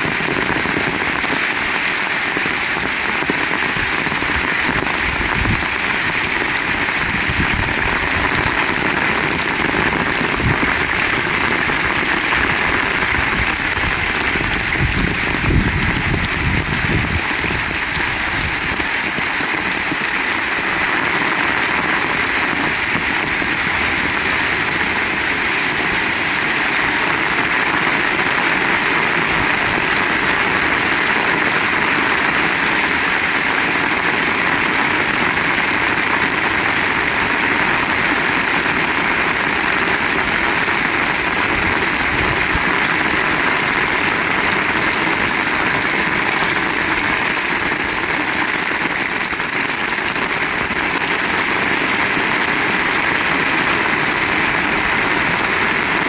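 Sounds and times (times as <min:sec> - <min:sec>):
heavy rain pouring: 0:00.0 - 0:56.0
gusting wind rumble: 0:13.2 - 0:18.8.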